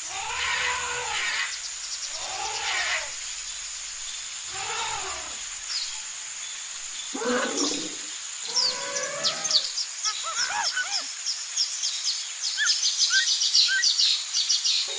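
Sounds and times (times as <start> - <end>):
wild animal calling: 0.0 - 6.2, 7.1 - 11.1
bird chirp: 0.0 - 14.9
forest ambience hiss: 0.0 - 14.9.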